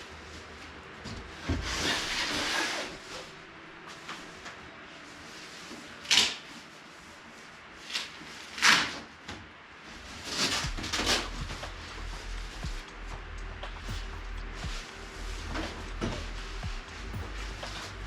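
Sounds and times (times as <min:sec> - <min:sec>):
low hum: 0:09.9 - 0:18.0
knocks and scrapes of objects: 0:10.1 - 0:12.8.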